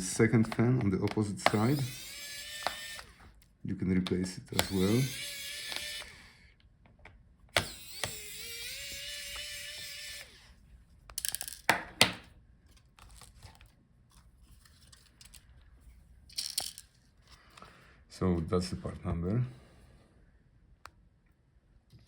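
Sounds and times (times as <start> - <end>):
small parts clicking and tapping: 0.4 - 6.1, 11.1 - 13.3, 16.3 - 17.0
electric screwdriver whirring: 1.4 - 3.3, 4.5 - 6.5, 7.5 - 10.6.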